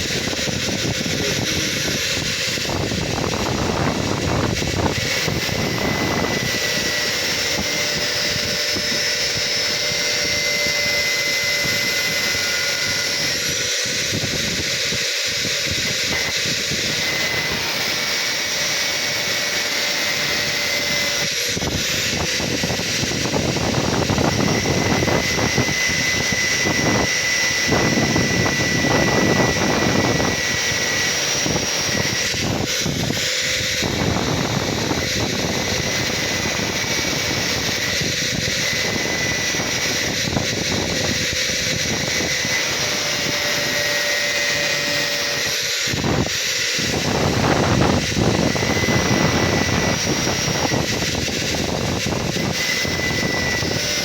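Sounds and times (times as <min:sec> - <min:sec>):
angle grinder cutting metal: 0:00.0 - 0:54.0.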